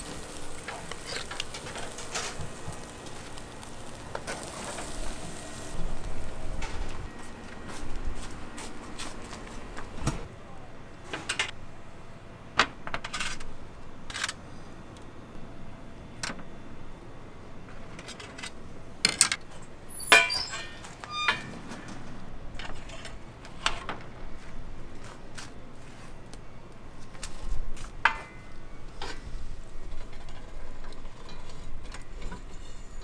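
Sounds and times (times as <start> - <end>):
ringing metallic clatter: 20.0 - 21.6.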